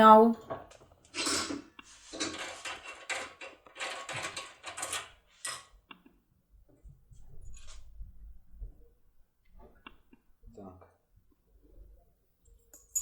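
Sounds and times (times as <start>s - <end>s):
metallic scrapes and clicks in lock: 1.4s - 5.7s.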